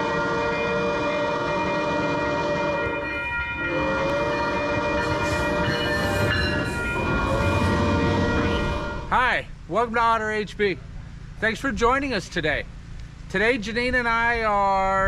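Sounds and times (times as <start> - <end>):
train horn blasts: 0.0 - 9.1.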